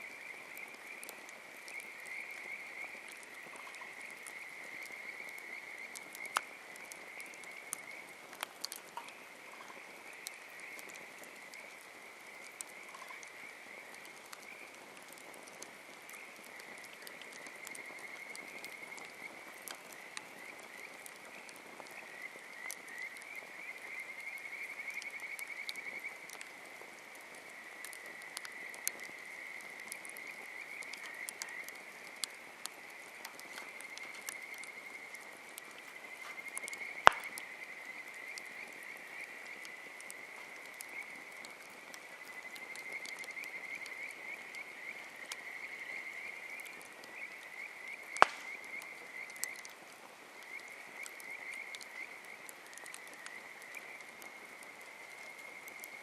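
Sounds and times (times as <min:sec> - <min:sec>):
campfire pops and cracks: 0:00.6 - 0:09.2, 0:13.9 - 0:23.4, 0:27.3 - 0:56.0
frogs calling in a trill: 0:47.2 - 0:49.6.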